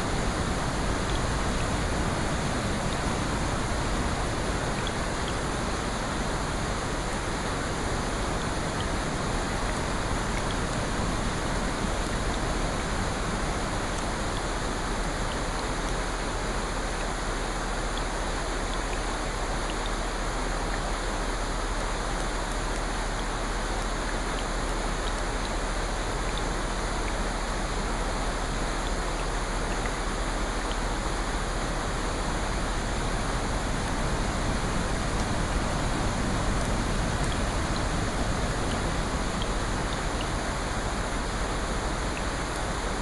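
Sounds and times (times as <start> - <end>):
rushing water: 0.0 - 43.0
faint ticks: 24.1 - 27.2.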